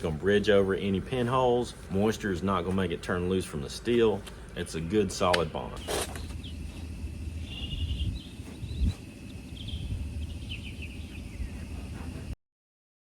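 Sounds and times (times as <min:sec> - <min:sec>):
birds chirping: 0:00.0 - 0:12.4
low rumble: 0:06.2 - 0:12.4.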